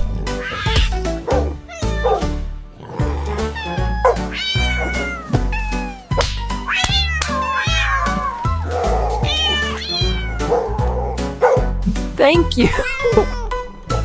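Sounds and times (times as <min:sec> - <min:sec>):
background music with bass line: 0:00.0 - 0:14.0
cat meowing: 0:00.4 - 0:01.0, 0:01.6 - 0:02.3, 0:03.4 - 0:10.8.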